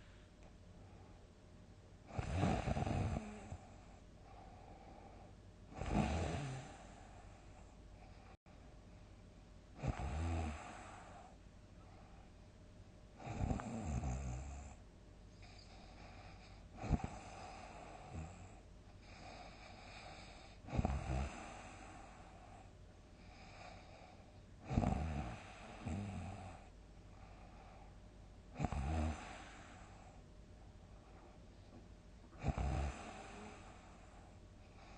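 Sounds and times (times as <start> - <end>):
quiet breaths: 0.0 - 34.9
person snoring heavily: 2.1 - 3.6, 5.8 - 7.1, 9.8 - 11.3, 13.2 - 14.6, 19.1 - 22.1, 24.6 - 26.6, 28.6 - 29.9, 32.4 - 33.8.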